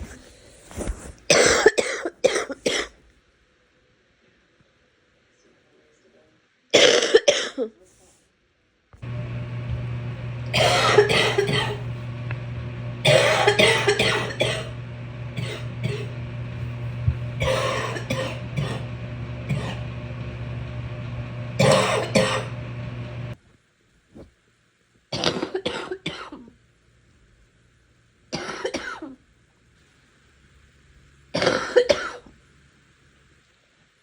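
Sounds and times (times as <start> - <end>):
person coughing wetly: 1.3 - 2.9, 6.8 - 7.7, 10.5 - 11.8, 13.0 - 14.7, 15.4 - 16.2, 17.4 - 18.9, 19.5 - 19.9, 21.6 - 22.6, 25.2 - 26.4, 28.4 - 29.2, 31.4 - 32.3.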